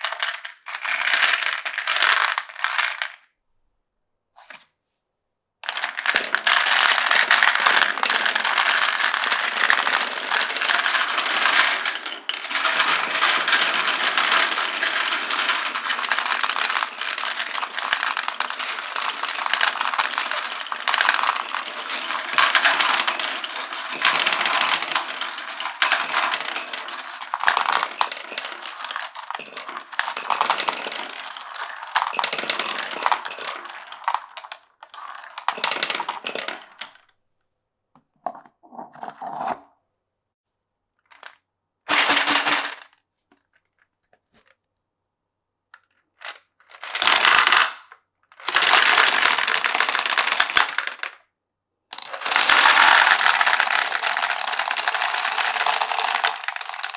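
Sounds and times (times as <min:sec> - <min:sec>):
marbles rattling down wooden run: 0:00.0 - 0:03.2, 0:05.6 - 0:37.0, 0:41.9 - 0:42.9, 0:46.2 - 0:47.8, 0:48.4 - 0:51.2, 0:52.0 - 0:56.9.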